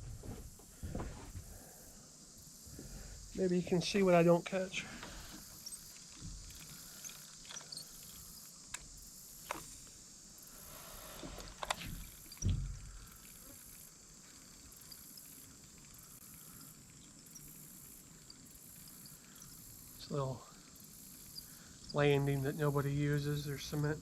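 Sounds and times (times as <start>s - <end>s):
soft thump: 0.0s - 1.4s, 12.4s - 12.8s
pulsing insect drone: 0.0s - 24.0s.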